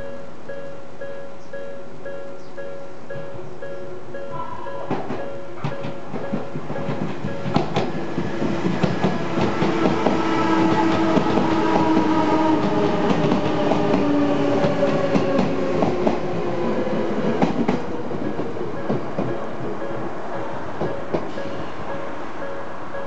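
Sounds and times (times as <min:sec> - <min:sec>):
electric train whine: 0:00.0 - 0:23.0
train wheels clacking on rail joints: 0:04.8 - 0:22.6.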